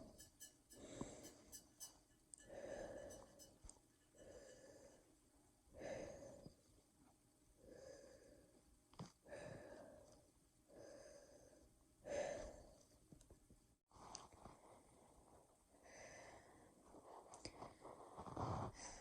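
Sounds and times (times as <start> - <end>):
person breathing slowly: 0.0 - 6.6, 7.6 - 12.9.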